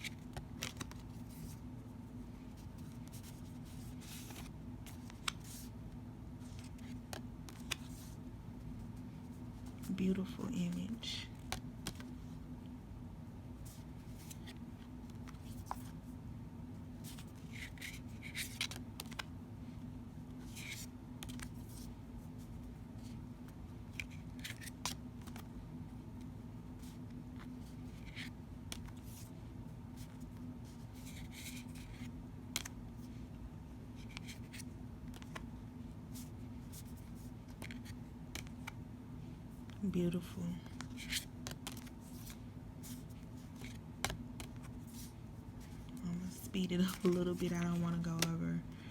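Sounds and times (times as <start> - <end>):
cards sliding against cards: 0.0 - 1.6, 2.5 - 5.8, 6.4 - 8.2, 17.0 - 19.3, 20.4 - 21.9, 23.9 - 25.5, 26.8 - 29.3, 30.0 - 32.7, 34.0 - 35.5, 36.1 - 38.8, 40.7 - 46.0, 46.8 - 48.3.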